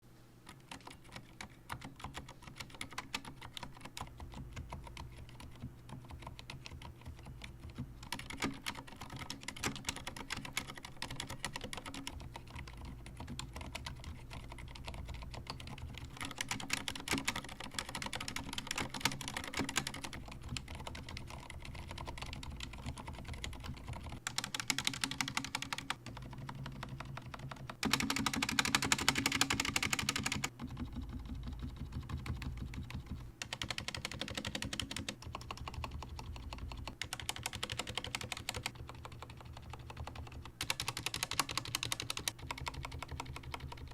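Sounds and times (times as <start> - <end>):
mechanical keyboard typing: 0.5 - 43.9.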